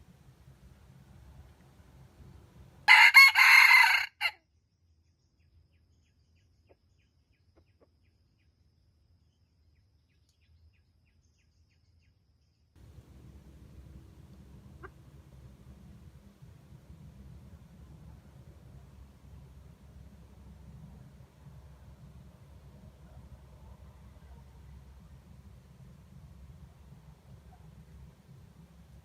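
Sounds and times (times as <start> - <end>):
rooster crowing: 2.6 - 4.4, 12.8 - 26.0.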